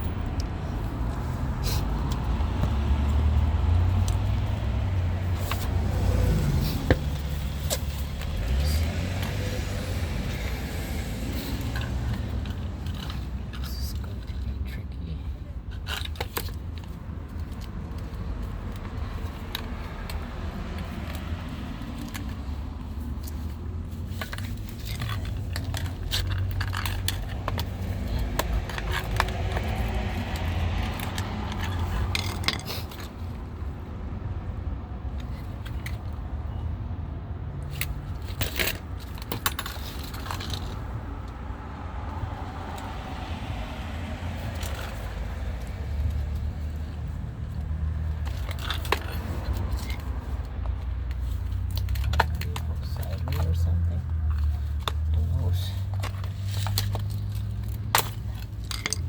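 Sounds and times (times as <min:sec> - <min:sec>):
metal tools clinking and scraping: 0:05.2 - 0:33.7, 0:37.6 - 0:41.4, 0:44.4 - 0:59.0.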